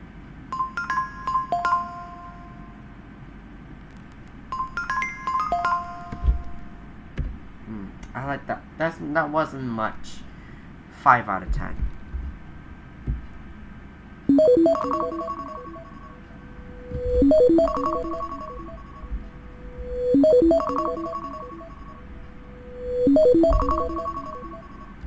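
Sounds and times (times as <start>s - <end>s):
phone ringtone: 0.5s - 2.8s, 4.5s - 6.8s, 14.3s - 25.0s.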